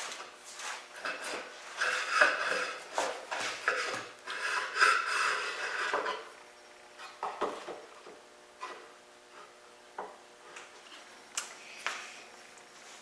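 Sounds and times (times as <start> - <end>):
metal clamps scraping on wood: 1.0 - 6.3.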